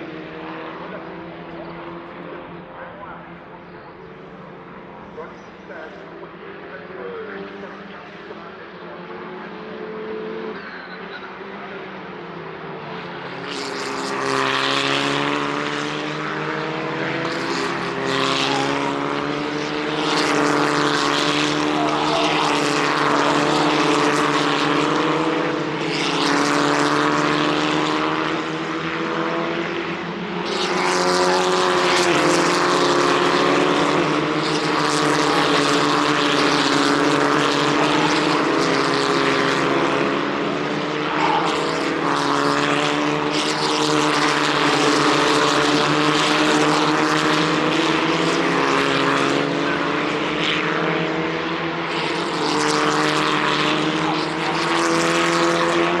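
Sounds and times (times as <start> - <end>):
race car engines at high revs: 0.0 - 56.0.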